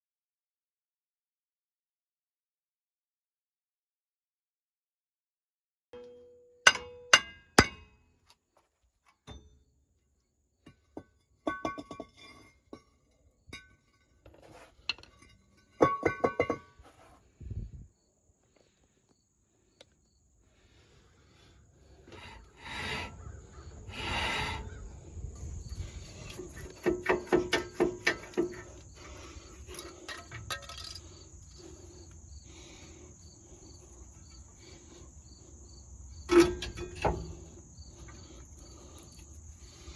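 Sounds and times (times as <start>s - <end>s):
high insect drone: 17.4s - 39.9s
metal tools clanking: 26.2s - 31.7s, 36.2s - 39.2s.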